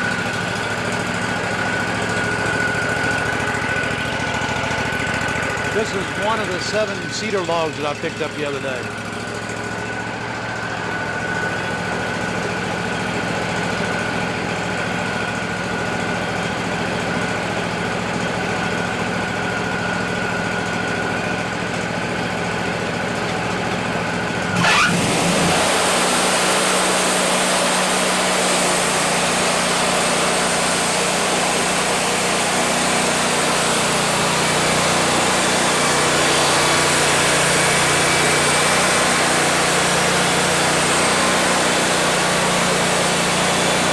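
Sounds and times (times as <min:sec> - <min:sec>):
sawmill engine whining: 0:00.0 - 0:43.9
band saw blade cutting log: 0:24.6 - 0:31.7, 0:32.3 - 0:43.9.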